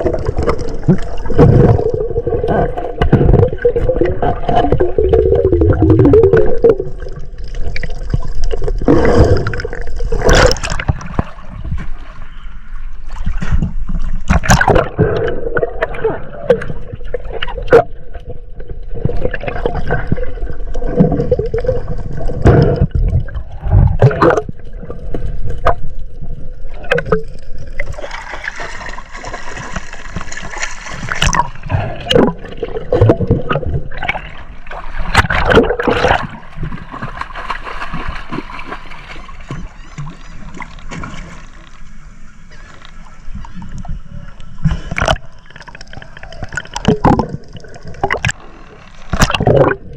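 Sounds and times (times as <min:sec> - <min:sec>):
water gurgling and sloshing: 0:00.0 - 0:49.9
knocks and splashes: 0:08.1 - 0:12.2, 0:13.2 - 0:17.9, 0:27.8 - 0:41.6, 0:49.1 - 0:49.9.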